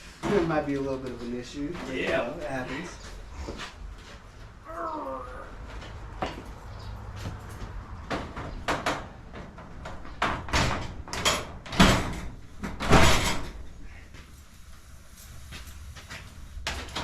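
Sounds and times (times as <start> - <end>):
knocks and clatter of parts: 5.6 - 13.7, 15.6 - 17.0.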